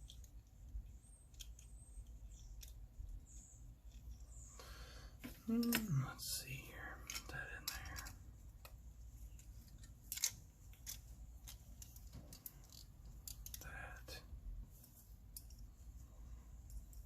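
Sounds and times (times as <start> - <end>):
model car parts clicking: 0.0 - 4.3, 7.0 - 14.1, 15.2 - 15.7.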